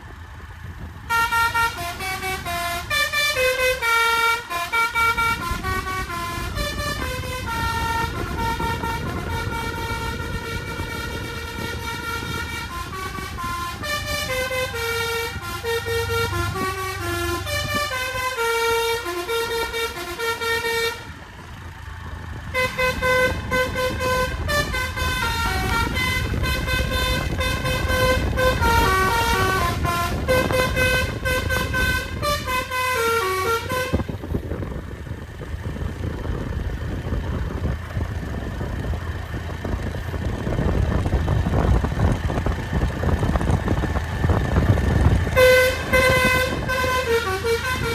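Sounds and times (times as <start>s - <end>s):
bus engine and road rumble: 0.0s - 47.9s
multi-tone bus horn melody: 0.0s - 47.9s.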